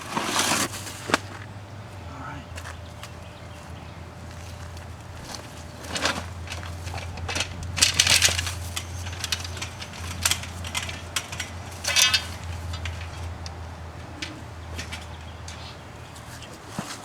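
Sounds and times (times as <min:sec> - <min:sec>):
soil being dug and scraped: 0:00.0 - 0:01.4.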